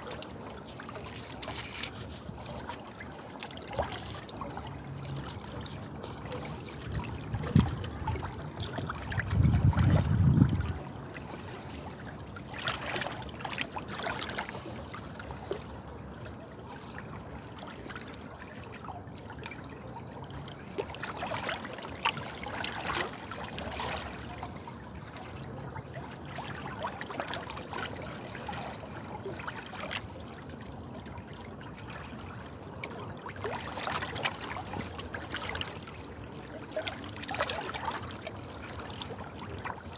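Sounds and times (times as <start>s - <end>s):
water trickling: 0.0s - 39.9s.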